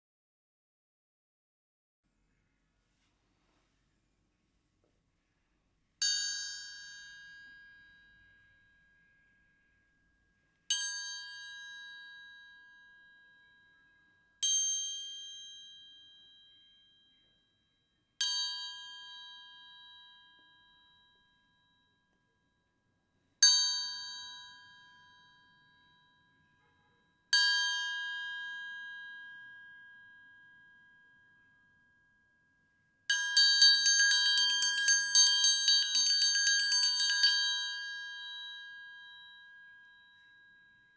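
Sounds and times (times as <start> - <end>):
toy metal triangle ringing: 33.1 - 40.6.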